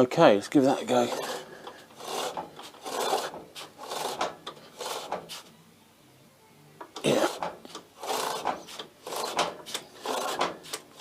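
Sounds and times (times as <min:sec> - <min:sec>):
chain rasping over sprockets: 0:01.0 - 0:05.1, 0:08.0 - 0:10.5.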